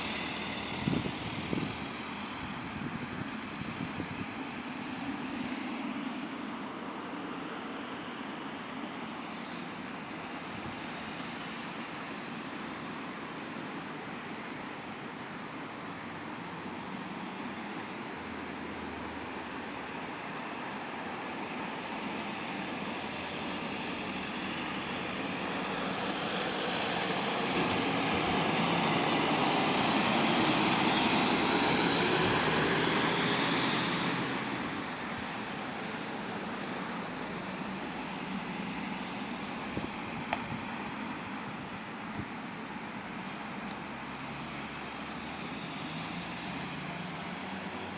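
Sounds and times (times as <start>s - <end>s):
vehicle engine passing by: 0.0s - 2.6s, 26.6s - 36.1s, 43.9s - 47.9s.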